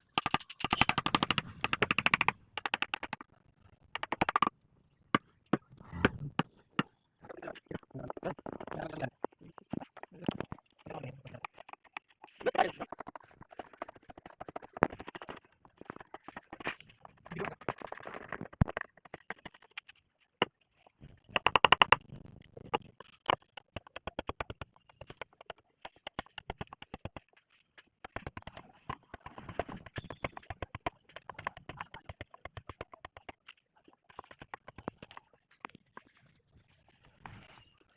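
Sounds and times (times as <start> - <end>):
carving tools tapping wood: 0.1 - 3.3, 3.9 - 4.5, 21.3 - 22.0, 22.7 - 27.4, 28.0 - 35.8.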